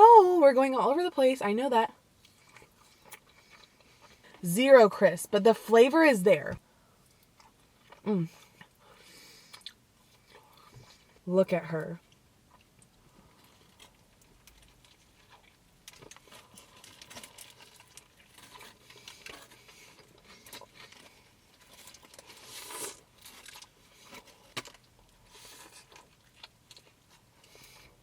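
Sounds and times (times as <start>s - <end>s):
food wrapper crinkling: 12.5s - 27.6s.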